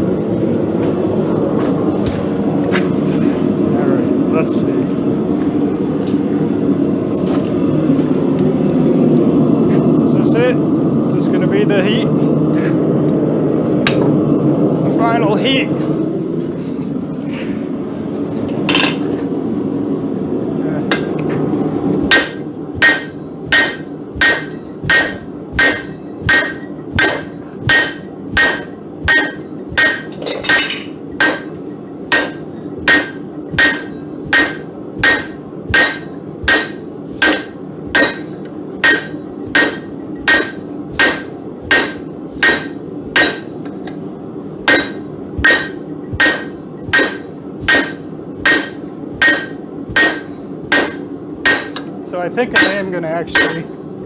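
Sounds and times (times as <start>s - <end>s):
steady low hum: 0.0s - 54.0s
hammer striking steel on anvil: 18.7s - 19.1s, 22.1s - 44.0s, 44.6s - 53.8s.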